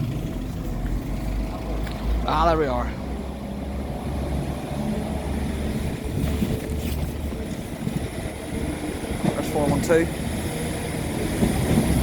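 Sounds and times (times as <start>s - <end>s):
diesel train engine rumble: 0.0s - 12.0s
wind on microphone: 5.5s - 9.4s.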